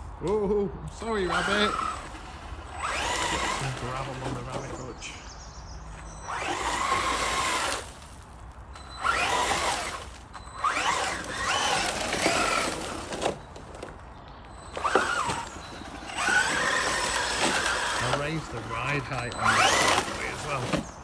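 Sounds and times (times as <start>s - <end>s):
rc car motor whining: 0.9s - 5.1s, 5.9s - 8.2s, 8.8s - 21.0s
gravel hissing under tyres: 5.9s - 13.7s.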